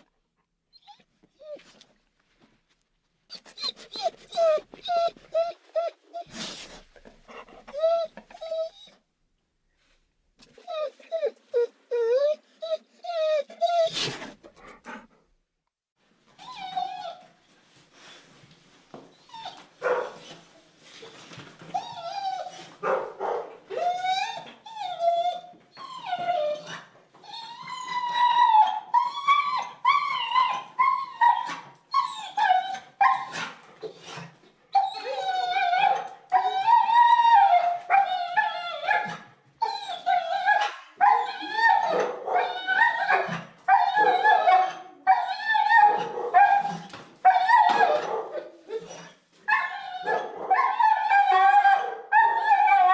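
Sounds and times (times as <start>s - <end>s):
dog whining: 0.7s - 1.8s, 3.3s - 9.1s, 10.5s - 15.2s, 21.7s - 23.1s, 23.7s - 52.9s.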